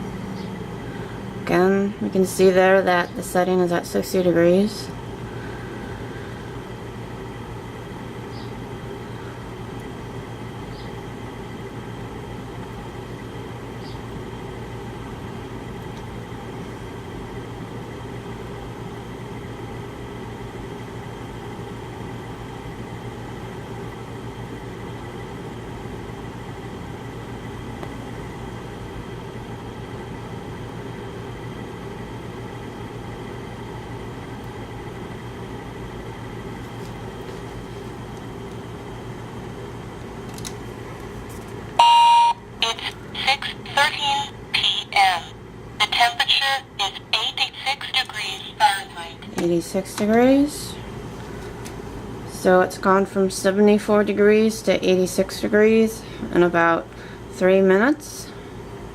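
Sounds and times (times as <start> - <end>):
air conditioner fan rush: 0.0 - 58.9
faint steady high tones: 41.8 - 49.3.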